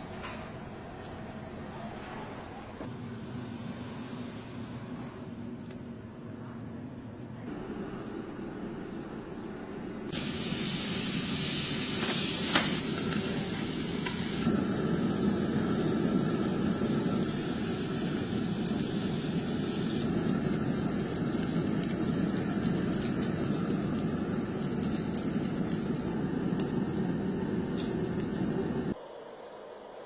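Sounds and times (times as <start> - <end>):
loud high hiss: 10.1 - 20.1
barbecue hissing and sizzling: 10.1 - 29.0.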